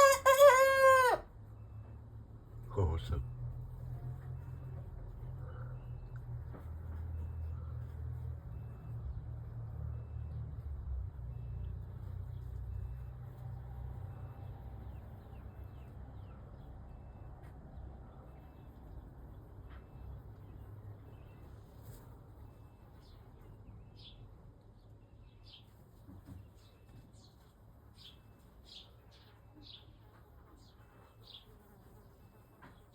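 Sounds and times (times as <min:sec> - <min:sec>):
vehicle engine rumble: 0:01.4 - 0:22.8.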